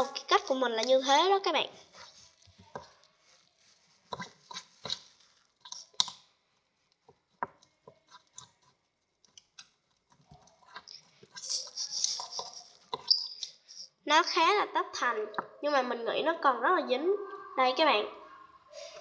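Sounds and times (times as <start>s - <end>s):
slime squelching while stirred: 0.0s - 14.4s.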